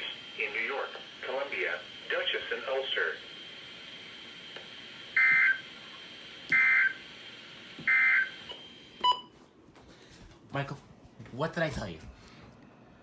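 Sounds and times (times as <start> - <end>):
faint high whine: 0.0 - 9.4.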